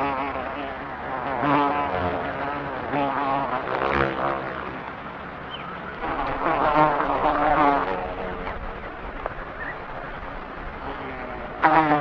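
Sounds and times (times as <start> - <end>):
housefly buzzing: 0.0 - 4.8, 6.0 - 8.3.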